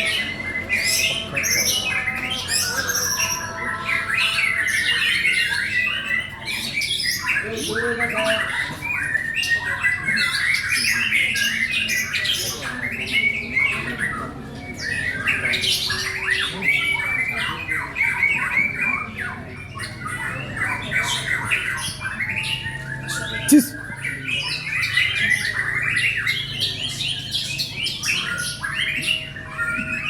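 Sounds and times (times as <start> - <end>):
bird harsh chattering: 20.1 - 27.6.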